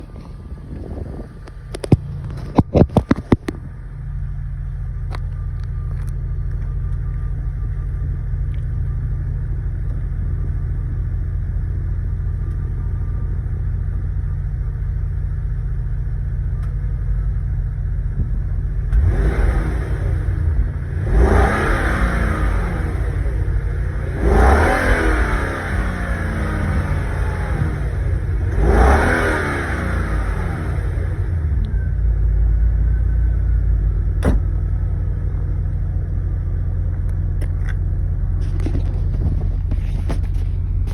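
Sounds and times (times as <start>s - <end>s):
car engine idling: 0.0s - 40.9s
engine revving in short blips: 18.4s - 34.7s.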